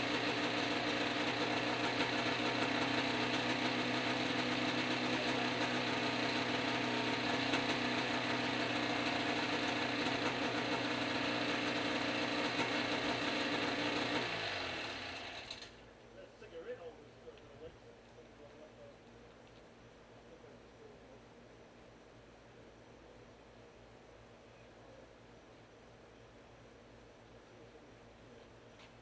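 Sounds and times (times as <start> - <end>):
small engine running: 0.0 - 15.8.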